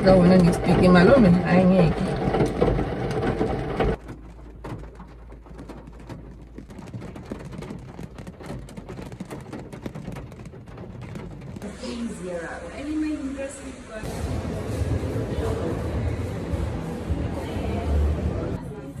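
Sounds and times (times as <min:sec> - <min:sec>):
rain drops pattering: 0:00.0 - 0:14.1.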